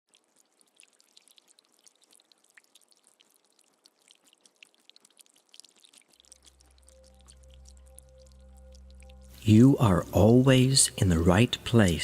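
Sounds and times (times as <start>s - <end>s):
water trickling and dripping: 0.0s - 12.0s.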